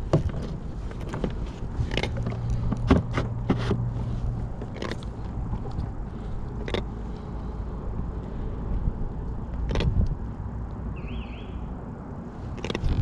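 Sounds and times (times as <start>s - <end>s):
rumble of wind and water: 0.0s - 13.0s.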